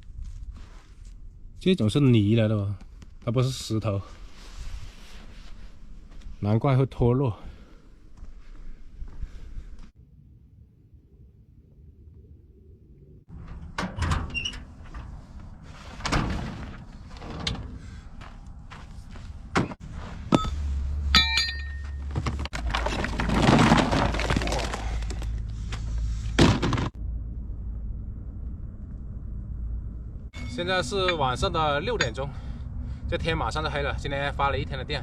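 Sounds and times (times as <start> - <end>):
low steady hum: 0.0 - 35.0
knocks and clattering of hard objects: 21.2 - 25.4, 26.4 - 27.0.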